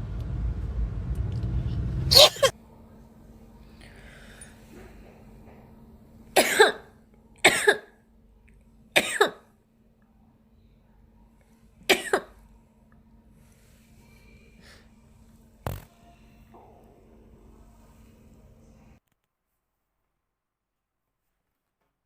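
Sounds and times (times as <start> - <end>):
woman sneezing: 2.1 - 2.5.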